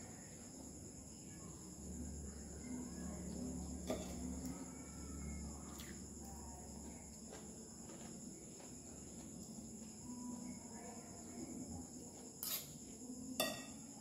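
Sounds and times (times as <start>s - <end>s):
crickets trilling: 0.0s - 14.0s.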